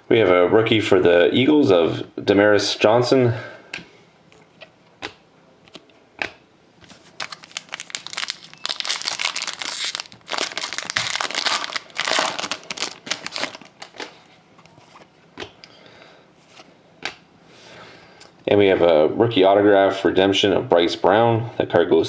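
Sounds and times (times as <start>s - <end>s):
foil wrapper crackling: 6.9s - 14.3s.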